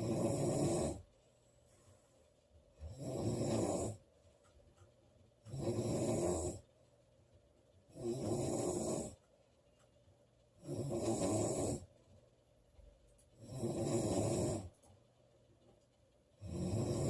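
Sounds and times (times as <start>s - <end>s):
woman snoring: 0.0s - 1.0s, 2.8s - 4.0s, 5.5s - 6.6s, 7.9s - 9.2s, 10.6s - 11.9s, 13.4s - 14.7s, 16.4s - 17.0s.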